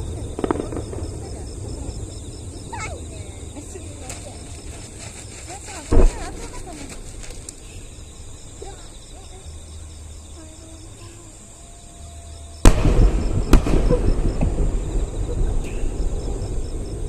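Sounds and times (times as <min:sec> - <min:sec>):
fireworks booms: 0:00.0 - 0:07.7, 0:12.6 - 0:17.0
fireworks crackling and rumbling: 0:00.0 - 0:09.3, 0:12.6 - 0:17.0.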